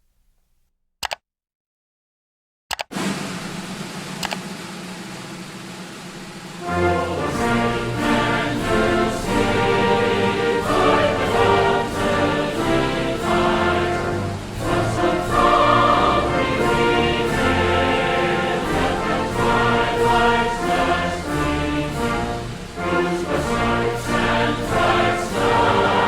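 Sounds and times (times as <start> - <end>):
orchestral music: 3.0 - 26.0
choir singing sustained chords: 6.0 - 26.0.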